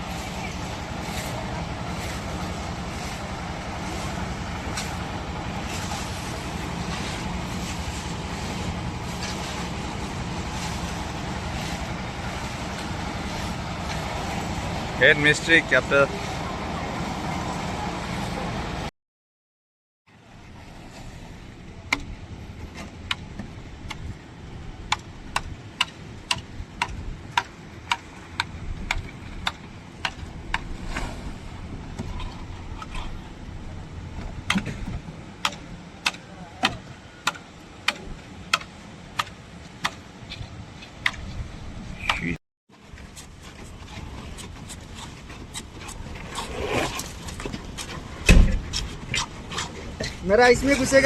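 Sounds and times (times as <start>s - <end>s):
low rumble: 0.0s - 18.9s, 20.2s - 36.0s.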